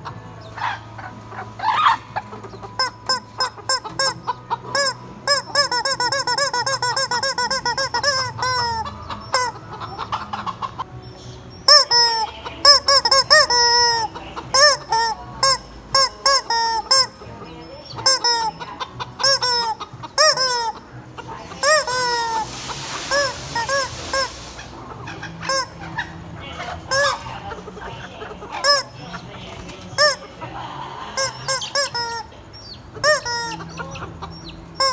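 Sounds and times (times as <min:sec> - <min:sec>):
rubber chicken toy squawking: 0:00.0 - 0:10.9, 0:11.6 - 0:30.3, 0:31.1 - 0:34.9
rasping hissy noise: 0:21.0 - 0:25.8.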